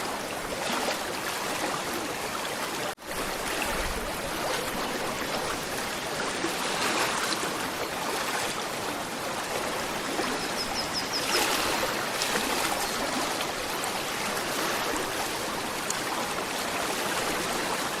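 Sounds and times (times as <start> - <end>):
river flowing over stones: 0.0 - 18.0.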